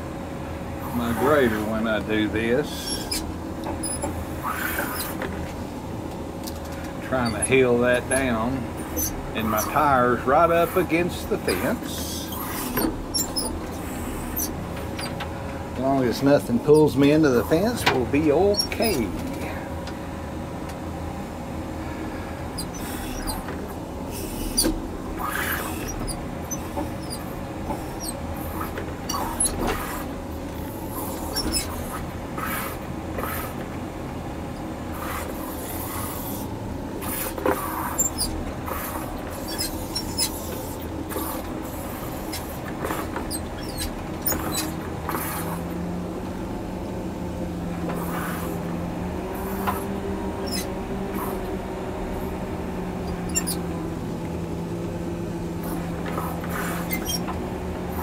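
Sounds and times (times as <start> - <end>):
diesel engine running under load: 0.0 - 58.0
higher steady engine tone: 0.0 - 58.0
squeaks and clicks: 2.8 - 5.3, 6.4 - 9.9, 11.4 - 15.3, 16.7 - 19.5, 22.6 - 33.7, 35.0 - 45.7, 49.4 - 51.5, 53.0 - 53.7, 55.6 - 57.4.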